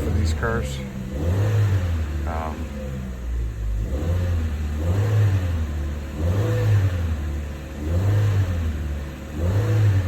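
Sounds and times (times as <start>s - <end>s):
car engine idling: 0.0s - 6.3s.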